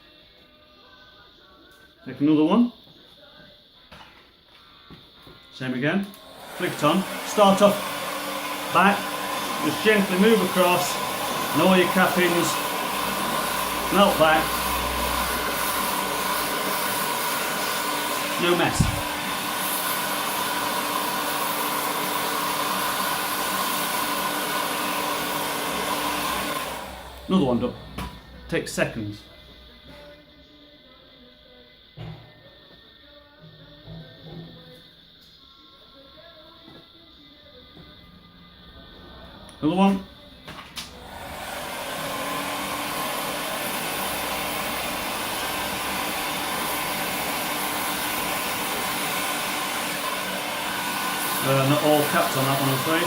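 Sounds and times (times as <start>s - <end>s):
heat gun fan blowing: 6.1s - 29.1s, 40.6s - 53.0s.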